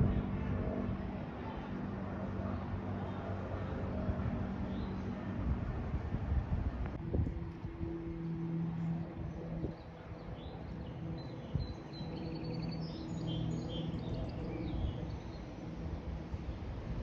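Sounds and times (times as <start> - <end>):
small birds chirping: 9.6 - 16.7.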